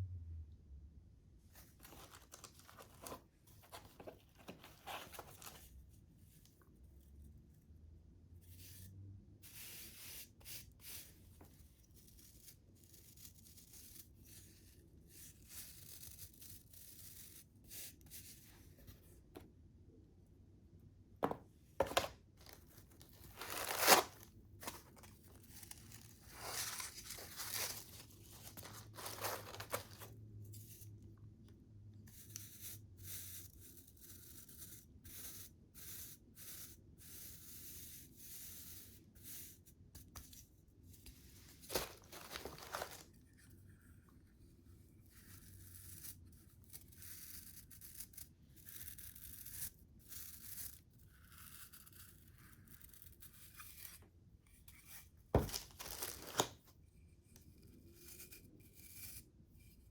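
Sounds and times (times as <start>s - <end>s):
packaging rustling and crinkling: 1.6s - 5.7s, 21.2s - 30.2s, 41.3s - 43.2s, 55.4s - 56.7s
packaging tearing: 21.8s - 30.1s, 41.6s - 43.1s, 55.4s - 56.6s.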